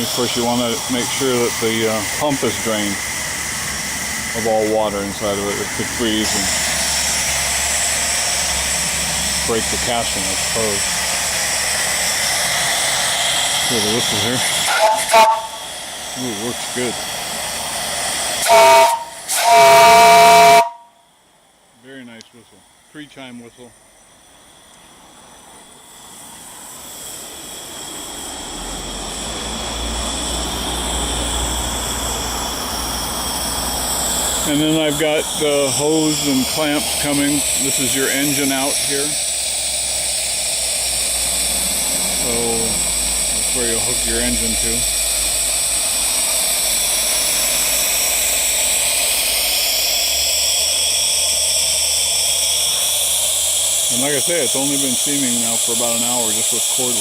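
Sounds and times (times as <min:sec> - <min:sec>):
steam hissing from boiler: 0:00.0 - 0:57.0
low rumble: 0:39.1 - 0:51.1.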